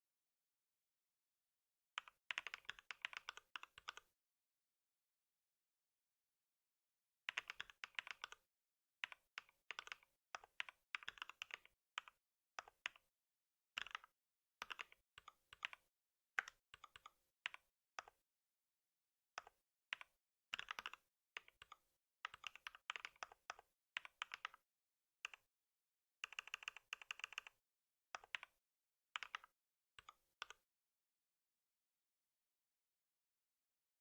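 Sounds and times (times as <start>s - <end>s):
computer keyboard typing: 2.0s - 4.1s, 7.3s - 8.4s, 9.0s - 13.0s, 19.9s - 24.6s, 26.2s - 27.6s, 28.2s - 28.5s, 29.2s - 30.6s.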